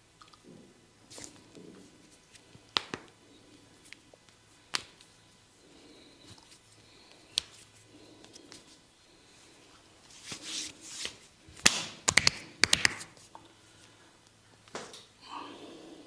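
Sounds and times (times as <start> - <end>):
sharp hand slaps: 2.8 - 3.1, 11.6 - 13.1
hands brushing rubs: 10.0 - 13.3.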